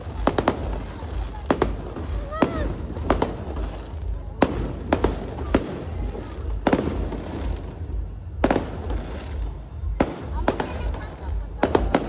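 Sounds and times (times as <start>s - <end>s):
continuous low rumble: 0.0s - 12.0s
fireworks bangs: 0.0s - 12.0s.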